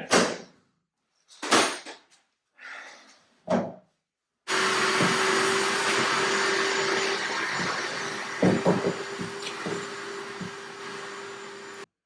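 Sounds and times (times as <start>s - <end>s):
electric fan running: 4.5s - 11.9s
knocks and clunks: 7.4s - 10.7s.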